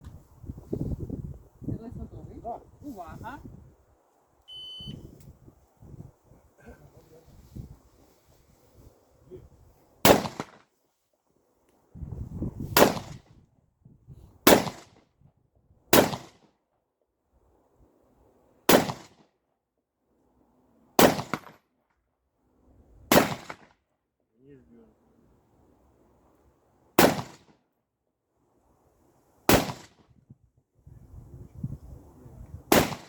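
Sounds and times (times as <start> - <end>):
rifle shots: 10.0 - 10.6, 12.8 - 13.2, 14.4 - 14.9, 15.9 - 16.4, 18.7 - 19.2, 21.0 - 21.6, 23.1 - 23.7, 27.0 - 27.5, 29.5 - 30.0, 32.7 - 33.0.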